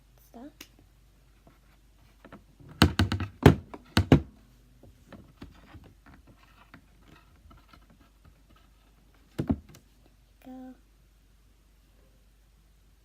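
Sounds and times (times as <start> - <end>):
plastic toy parts knocking: 2.2 - 4.3, 9.3 - 9.8
faint rustling: 3.8 - 10.2.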